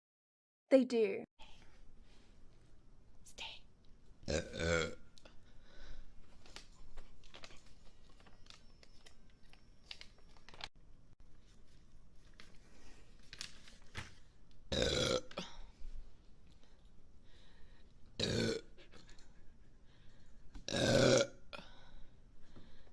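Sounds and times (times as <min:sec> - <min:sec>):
person burping: 0:04.2 - 0:05.0, 0:14.7 - 0:15.5, 0:18.2 - 0:18.8, 0:20.7 - 0:21.6.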